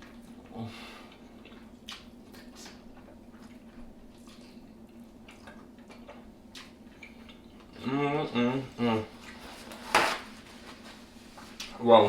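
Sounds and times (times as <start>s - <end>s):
person chewing wetly: 0.0s - 7.8s.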